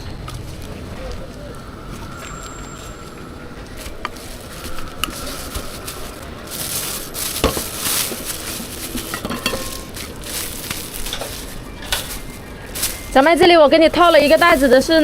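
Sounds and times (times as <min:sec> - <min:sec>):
metal utensils knocking on pan: 0:09.0 - 0:10.0.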